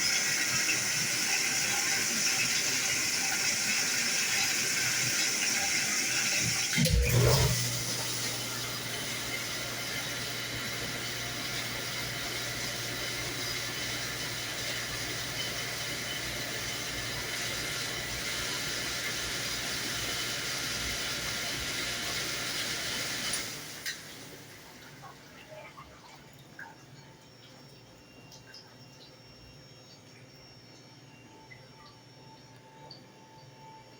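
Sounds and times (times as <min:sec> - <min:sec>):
pump hum: 0:00.0 - 0:33.9
dishwasher spraying water: 0:02.3 - 0:16.1
faint clicks and drips: 0:23.3 - 0:33.9.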